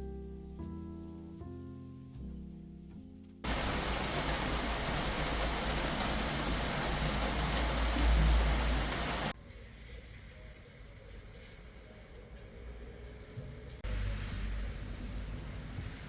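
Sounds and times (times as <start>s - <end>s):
steady rain falling: 3.4s - 9.4s.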